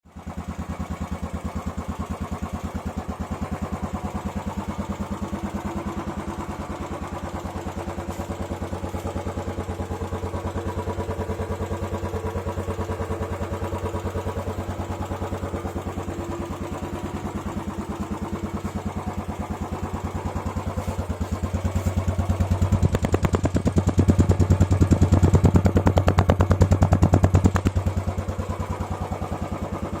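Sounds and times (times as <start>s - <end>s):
motorcycle engine thumping: 0.3s - 30.0s.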